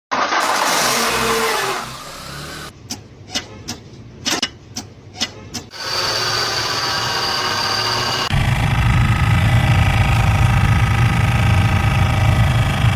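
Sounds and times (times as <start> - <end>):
car running with high whine: 5.8 - 12.9.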